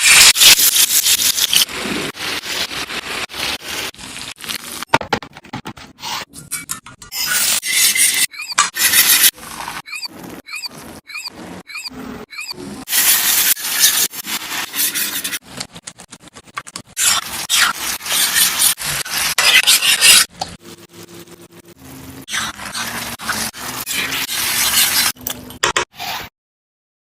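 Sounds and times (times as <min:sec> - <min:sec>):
utensil scraping in a pan: 0:05.4 - 0:15.8, 0:17.0 - 0:21.2, 0:22.2 - 0:25.2.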